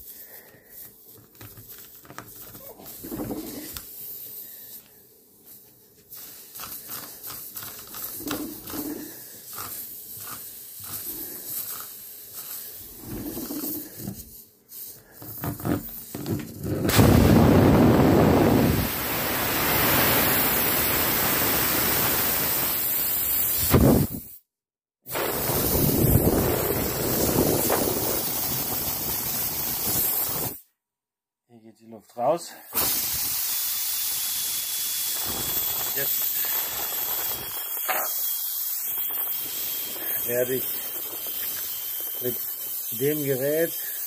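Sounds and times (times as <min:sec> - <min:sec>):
reamer scraping in tyre: 0:06.7 - 0:14.3
loud steady rushing hiss: 0:16.9 - 0:24.3, 0:25.1 - 0:30.6, 0:32.7 - 0:44.0.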